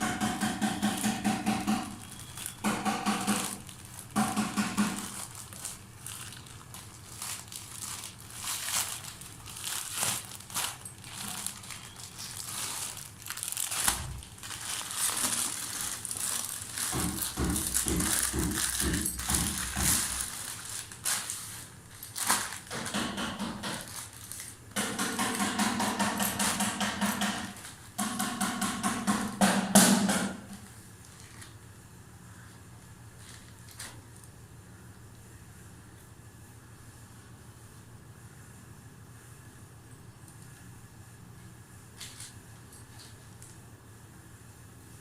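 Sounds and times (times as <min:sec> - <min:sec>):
plastic packaging crinkling: 0:01.0 - 0:23.0, 0:23.8 - 0:24.8, 0:30.6 - 0:31.7, 0:32.6 - 0:34.4
scraping buzzy packaging: 0:01.9 - 0:22.9.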